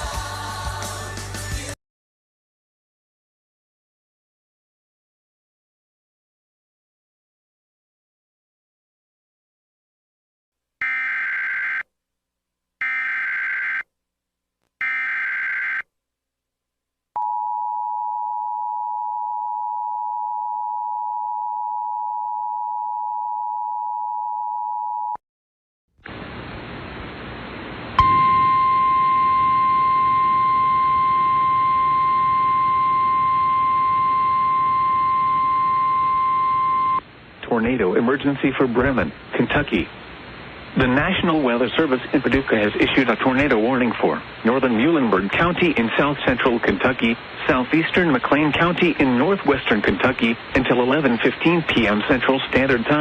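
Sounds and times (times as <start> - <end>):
radio static hiss: 26.0 - 28.0, 37.1 - 53.0
steady warning tone: 28.0 - 37.0
two-note attention signal: 28.0 - 37.0.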